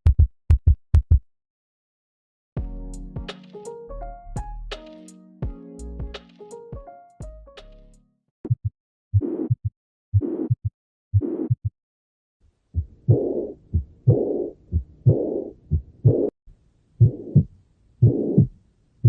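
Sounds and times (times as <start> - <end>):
heartbeat thuds: 0.0 - 1.2, 8.5 - 8.7, 12.7 - 16.3, 17.0 - 18.6
whooshing heart murmur: 12.8 - 16.3, 17.0 - 18.6.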